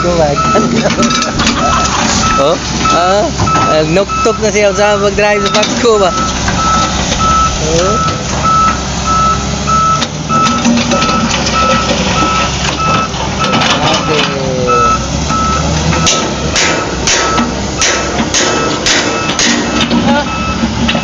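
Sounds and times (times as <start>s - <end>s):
reversing alarm beeping: 0.0s - 21.0s
truck engine running: 0.0s - 21.0s
sharp knocks: 15.9s - 21.0s.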